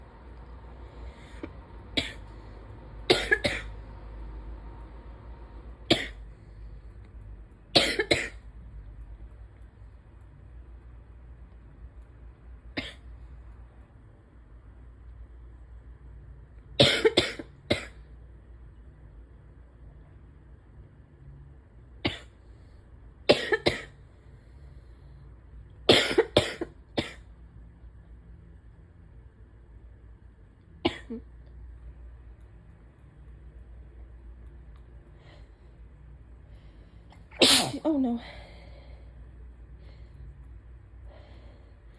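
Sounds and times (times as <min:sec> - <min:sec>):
person coughing: 0:02.0 - 0:02.2, 0:03.1 - 0:03.7, 0:05.9 - 0:06.2, 0:07.8 - 0:08.4, 0:12.8 - 0:13.0, 0:16.8 - 0:18.0, 0:23.3 - 0:23.9, 0:25.9 - 0:27.2, 0:30.9 - 0:31.2, 0:37.4 - 0:38.2.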